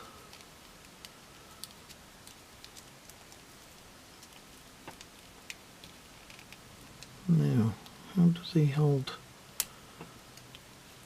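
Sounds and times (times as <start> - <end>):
low steady hiss: 0.0 - 11.0.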